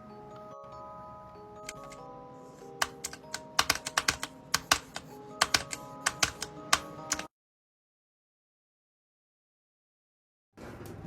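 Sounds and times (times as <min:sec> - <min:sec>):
soft chiming background music: 0:00.0 - 0:07.3
sharp clicks: 0:01.7 - 0:02.0, 0:02.8 - 0:07.3.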